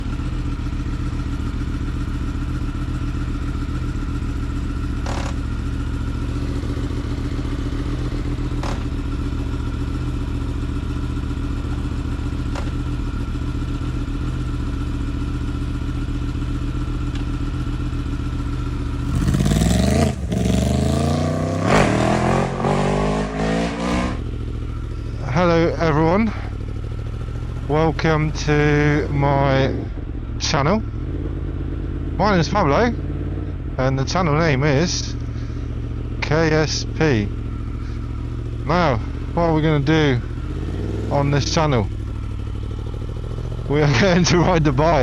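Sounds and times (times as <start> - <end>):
motorcycle engine idling: 0.0 - 23.4, 24.2 - 45.0
motorcycle engine revving: 0.0 - 45.0.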